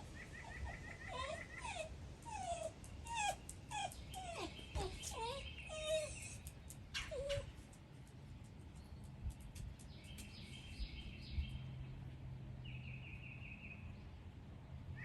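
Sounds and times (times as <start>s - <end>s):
dog whining: 0.5s - 6.4s, 7.0s - 7.5s.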